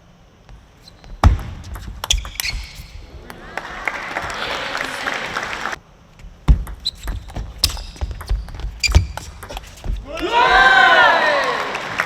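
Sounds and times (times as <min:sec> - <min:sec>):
table tennis ball hits: 0:01.2 - 0:03.4, 0:06.5 - 0:10.4
arena crowd noise: 0:03.0 - 0:05.8, 0:10.1 - 0:12.0.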